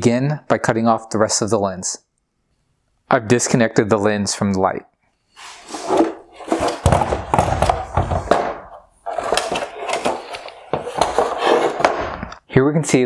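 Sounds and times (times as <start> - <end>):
hard plastic parts knocking and scraping: 5.4 - 12.4.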